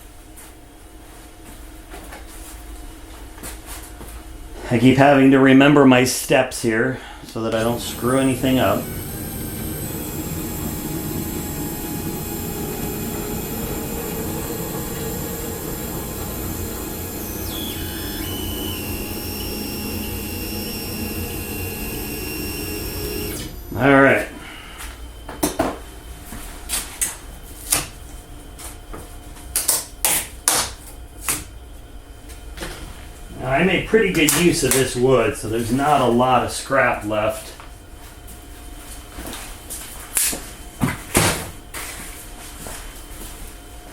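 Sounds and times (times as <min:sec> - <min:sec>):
low steady hum: 0:06.3 - 0:29.4
motor running with high whine: 0:07.4 - 0:25.4.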